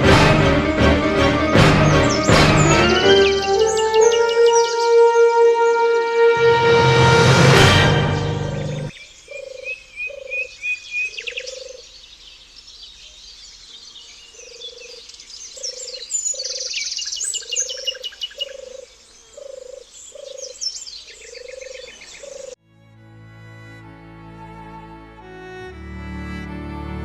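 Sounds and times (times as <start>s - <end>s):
small birds chirping: 8.4s - 22.6s
frogs croaking: 8.9s - 12.0s, 14.3s - 22.6s.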